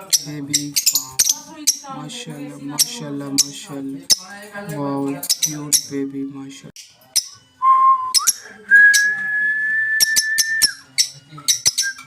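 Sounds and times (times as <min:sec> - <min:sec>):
lovebirds chirping: 0:00.0 - 0:06.2, 0:10.0 - 0:12.0.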